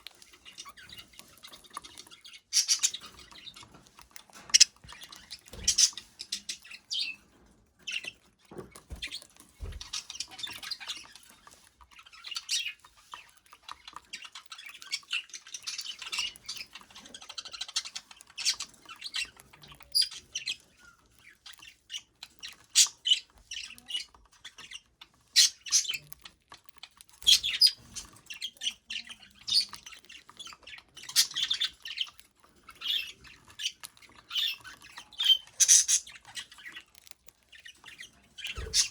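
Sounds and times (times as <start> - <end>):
budgerigar chattering and chirping: 2.3 - 3.1, 4.5 - 4.8, 22.7 - 26.1, 30.4 - 36.9, 37.9 - 38.9.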